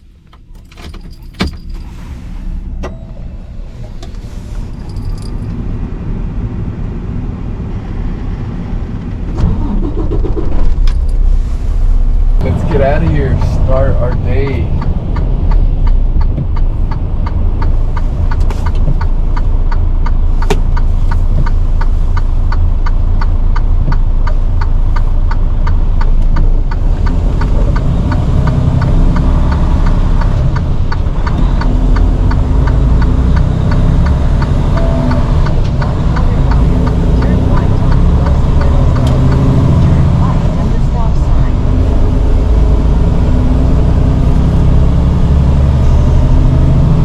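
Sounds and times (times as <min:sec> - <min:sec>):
truck diesel engine rumble: 0:00.0 - 0:47.0.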